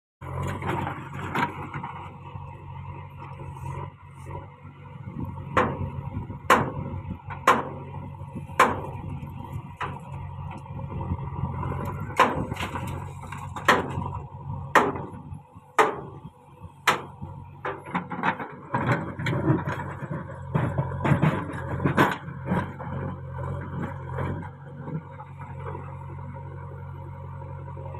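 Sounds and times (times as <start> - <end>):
backhoe diesel engine running: 0.2 - 27.9
sharp knocks and clanks: 5.6 - 5.9, 6.5 - 7.9, 8.6 - 9.0, 12.2 - 14.2, 14.8 - 15.2, 15.8 - 19.8.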